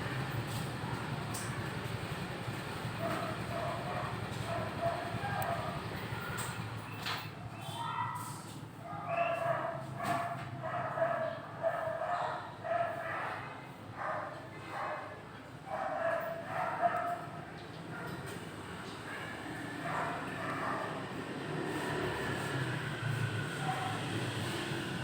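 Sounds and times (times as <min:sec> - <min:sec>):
dog barking: 0:03.0 - 0:06.3, 0:07.7 - 0:08.2, 0:08.8 - 0:17.4, 0:19.1 - 0:21.2, 0:23.6 - 0:24.4.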